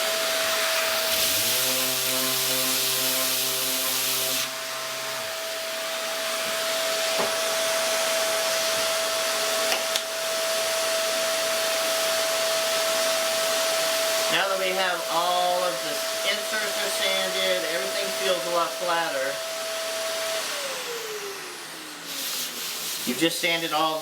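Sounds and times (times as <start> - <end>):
electric sander whine: 0.0 - 23.9
sandpaper hissing on wood: 22.0 - 24.0.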